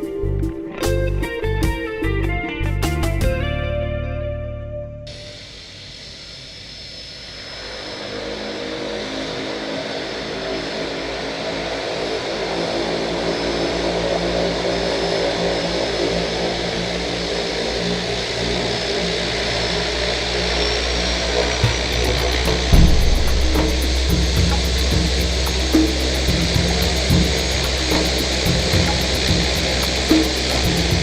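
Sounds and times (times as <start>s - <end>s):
engine running steadily: 7.9s - 31.0s.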